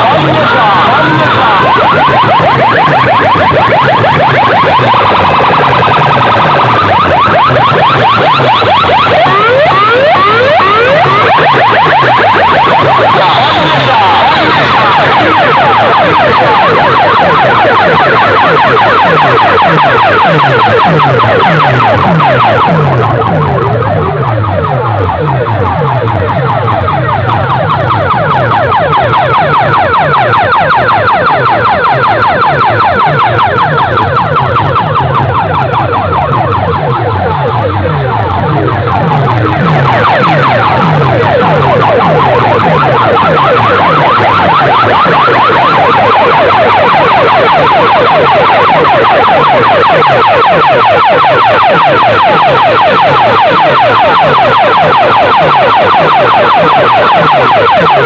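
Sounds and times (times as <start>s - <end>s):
siren-like track over speakers: 0.0s - 58.0s.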